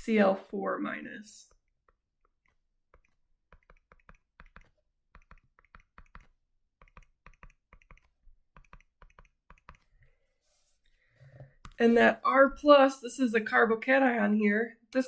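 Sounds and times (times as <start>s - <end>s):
faint keyboard clicking: 1.5s - 10.1s.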